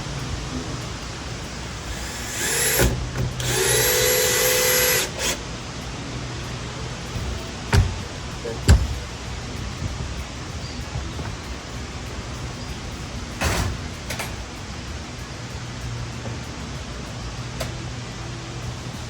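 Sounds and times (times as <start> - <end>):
steady low hum: 0.0 - 19.0
sharp knocks: 7.7 - 9.1.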